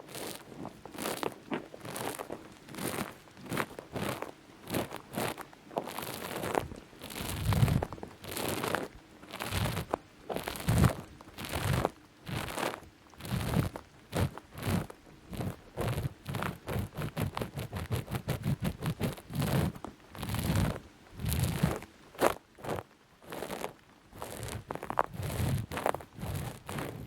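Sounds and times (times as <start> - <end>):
crunchy scratching and rubbing: 0.0 - 27.0.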